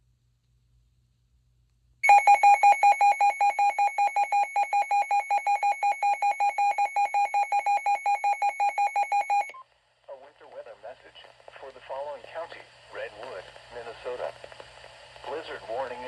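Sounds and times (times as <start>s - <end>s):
rapid high alarm beeps: 2.0s - 9.5s.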